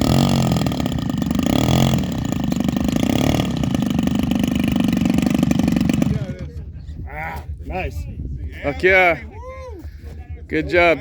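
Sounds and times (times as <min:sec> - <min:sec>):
model airplane engine running: 0:00.0 - 0:06.7.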